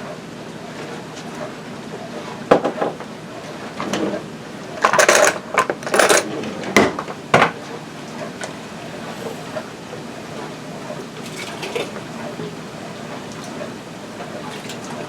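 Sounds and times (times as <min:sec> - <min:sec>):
glass jars and metal lids clinking: 0:04.9 - 0:06.3.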